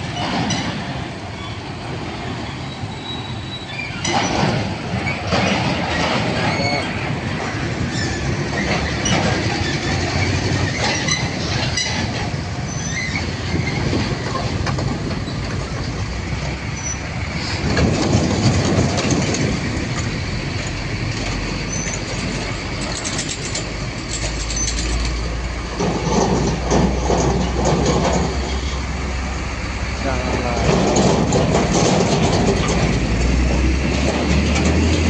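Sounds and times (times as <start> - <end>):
high wheel squeals: 0.0 - 7.1, 7.8 - 14.4, 16.6 - 17.6, 21.4 - 25.0
train wheels rumbling: 0.0 - 35.0.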